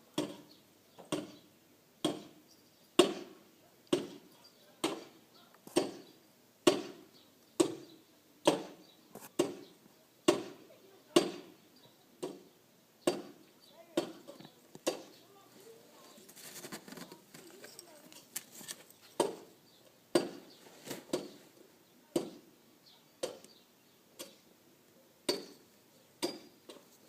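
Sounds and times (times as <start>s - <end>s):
dull hammering blows: 0.1s - 1.4s, 2.0s - 2.4s, 3.0s - 10.6s, 11.2s - 11.6s, 12.2s - 13.4s, 14.0s - 15.2s, 20.1s - 21.4s, 22.1s - 22.5s, 25.3s - 26.9s.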